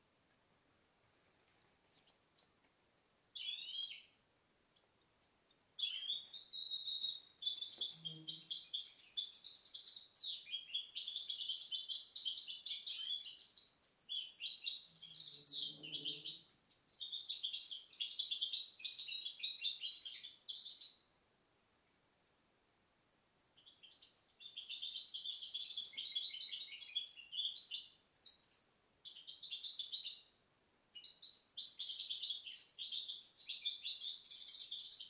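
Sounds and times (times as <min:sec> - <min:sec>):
finch singing: 0:03.4 - 0:04.2, 0:05.8 - 0:21.0, 0:23.6 - 0:30.4, 0:31.0 - 0:35.0.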